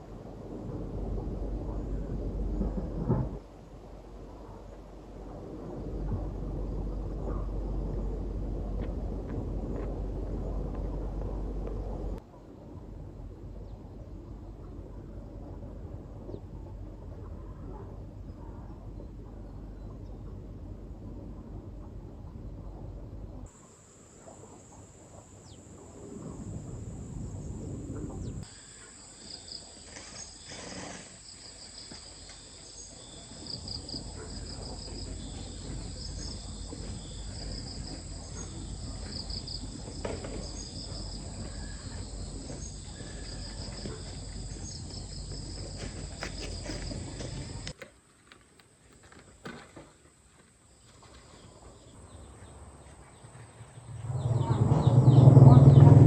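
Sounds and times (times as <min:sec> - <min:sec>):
low noisy background: 0:00.0 - 0:56.0
insect chirping pulses: 0:23.5 - 0:47.7
insects whining: 0:23.5 - 0:47.8.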